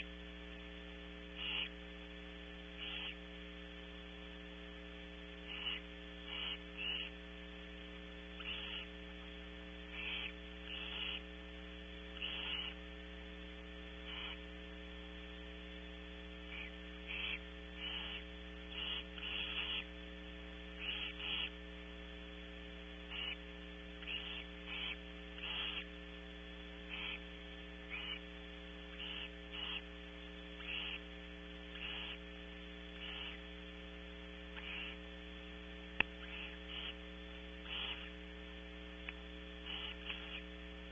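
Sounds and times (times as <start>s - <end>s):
electrical hum: 0.0s - 40.9s
owl chicks hissing calls: 1.4s - 1.8s, 2.8s - 3.2s, 5.4s - 7.2s, 8.3s - 9.3s, 9.9s - 11.3s, 12.2s - 12.8s, 14.0s - 14.5s, 16.5s - 20.0s, 20.7s - 21.7s, 23.0s - 26.0s, 26.8s - 33.5s, 34.5s - 35.1s, 36.0s - 38.2s, 39.0s - 40.6s.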